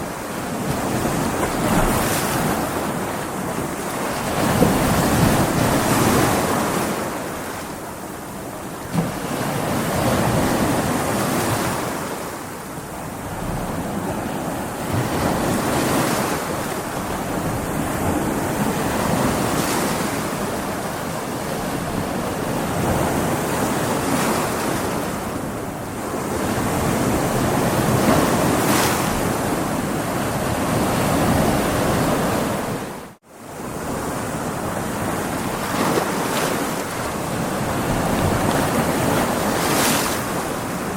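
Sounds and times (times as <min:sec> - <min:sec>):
waves surging and breaking: 0:00.0 - 0:40.9
wind: 0:00.0 - 0:40.9.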